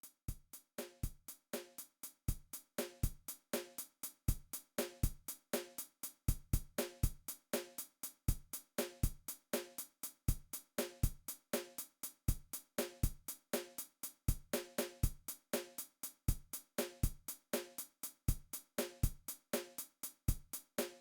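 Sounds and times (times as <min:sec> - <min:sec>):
drum beat: 0:00.3 - 0:21.0.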